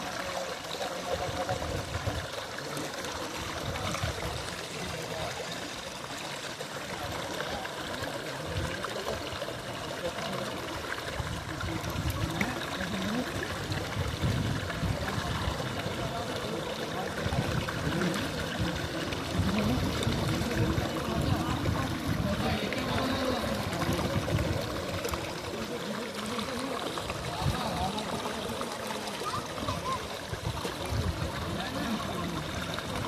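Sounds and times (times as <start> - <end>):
river water flowing: 0.0 - 33.0.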